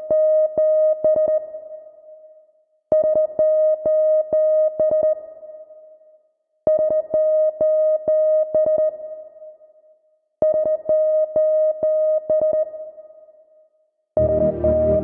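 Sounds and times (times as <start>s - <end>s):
staccato synthesizer riff: 14.2s - 15.0s.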